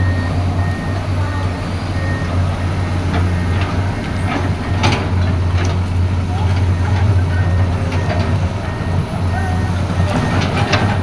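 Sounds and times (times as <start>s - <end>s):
excavator diesel engine running: 0.0s - 11.0s
travel alarm beeping: 0.0s - 11.0s.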